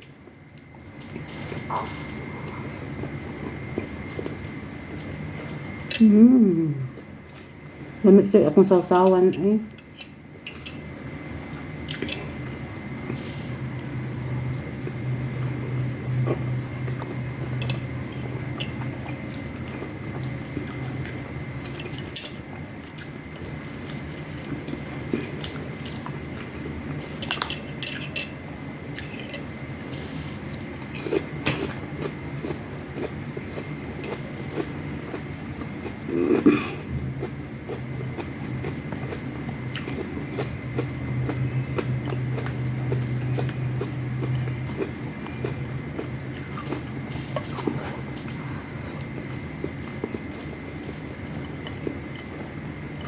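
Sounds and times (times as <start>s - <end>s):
steady low hum: 0.0s - 53.0s
utensils clinking on a plate: 8.8s - 11.0s, 11.9s - 12.5s, 17.4s - 19.1s, 21.7s - 22.5s, 27.1s - 28.4s, 29.0s - 31.7s
chewing food: 9.7s - 28.1s, 29.0s - 53.0s.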